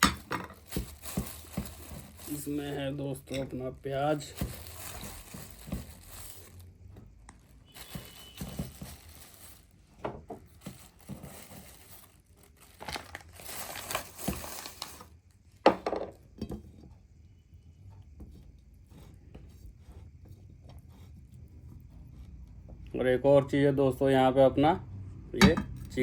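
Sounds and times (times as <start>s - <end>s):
packaging crinkling: 0.0s - 9.8s, 10.4s - 15.2s.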